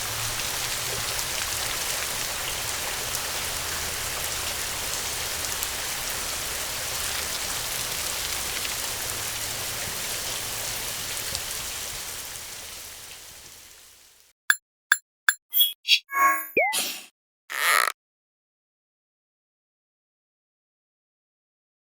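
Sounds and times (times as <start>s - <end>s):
steady rain falling: 0.0s - 14.3s.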